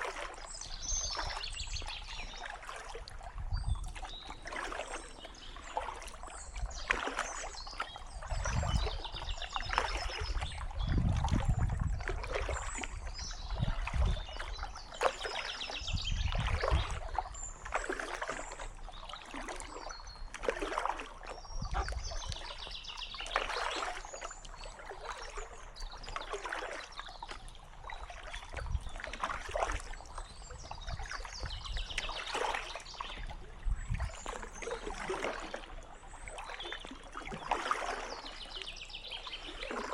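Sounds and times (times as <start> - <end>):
kayak paddle splashing in water: 0.0 - 39.9.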